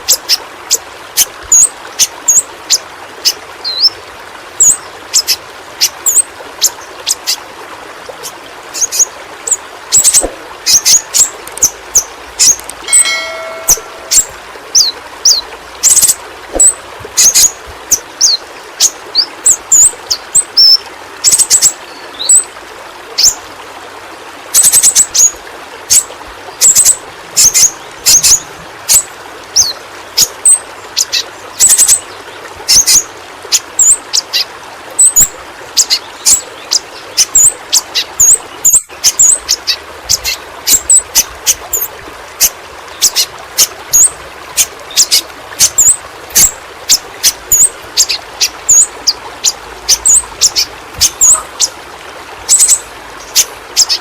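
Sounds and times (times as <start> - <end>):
bird chirping: 8.8 - 17.5, 47.2 - 51.8, 52.5 - 54.0.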